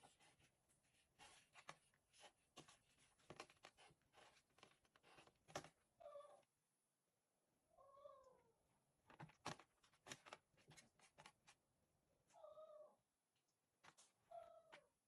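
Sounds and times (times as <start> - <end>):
cat meowing softly: 6.0 - 6.5, 7.7 - 8.6, 12.3 - 13.0.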